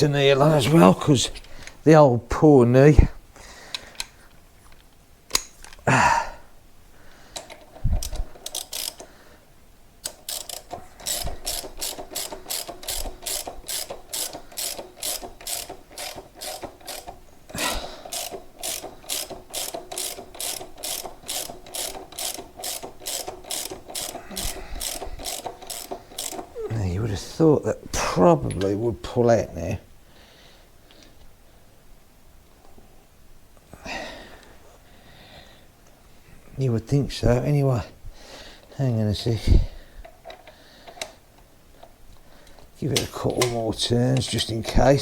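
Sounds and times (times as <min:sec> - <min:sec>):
ratchet wrench clicking: 0:07.4 - 0:09.1, 0:10.0 - 0:17.2, 0:18.1 - 0:26.6.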